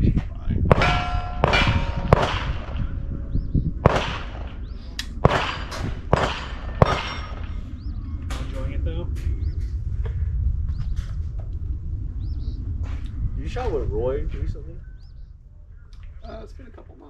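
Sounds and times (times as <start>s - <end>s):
steel targets ringing: 0.7s - 4.6s, 5.2s - 7.6s
sharp gunshots: 0.7s - 8.8s.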